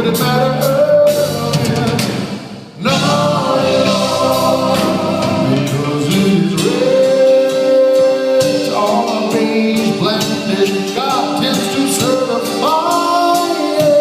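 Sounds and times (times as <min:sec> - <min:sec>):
live rock band playing: 0:00.0 - 0:14.0
voices singing in harmony: 0:02.8 - 0:14.0.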